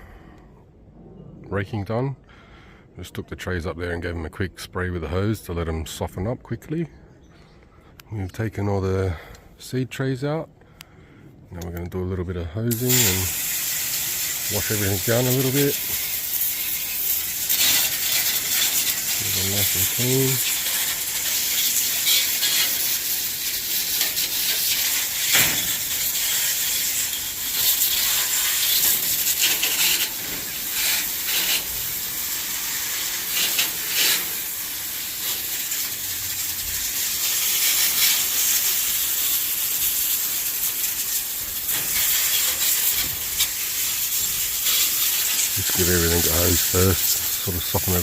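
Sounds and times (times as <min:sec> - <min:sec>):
water spraying from garden hose: 0:12.7 - 0:48.0.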